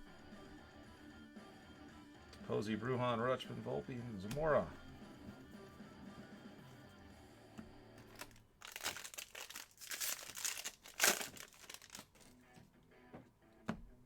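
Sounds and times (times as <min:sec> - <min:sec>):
plastic wrapper tearing and crinkling: 0:08.1 - 0:12.4.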